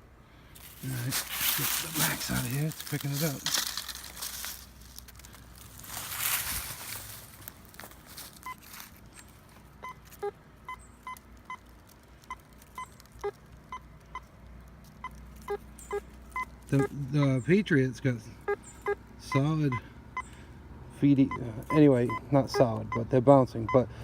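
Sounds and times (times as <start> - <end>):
rustling: 0.6 - 16.8
metal detector beeps: 8.4 - 8.6, 9.8 - 11.6, 12.3 - 14.3, 15.0 - 17.0, 18.5 - 20.3, 21.2 - 23.9.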